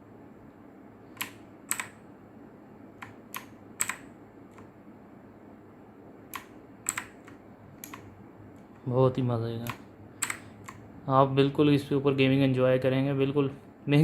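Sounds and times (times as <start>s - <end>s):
mechanical keyboard keys clacking: 1.2s - 2.0s, 3.0s - 4.6s, 6.3s - 8.0s.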